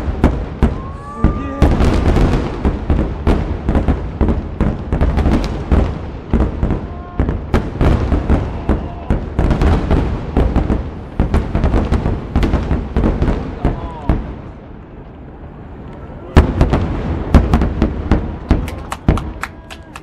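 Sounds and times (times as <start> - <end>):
firework shells bursting: 15.9 - 20.0.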